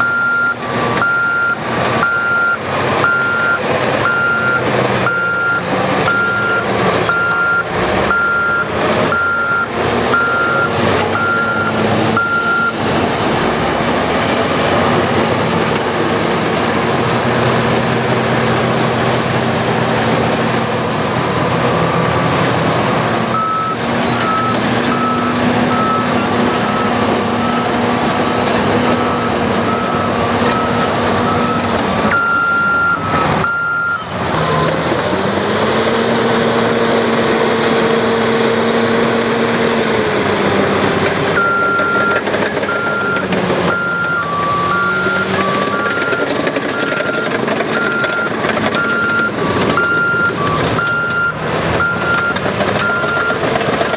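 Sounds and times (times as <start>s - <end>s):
heavy diesel machinery running: 0.0s - 53.9s.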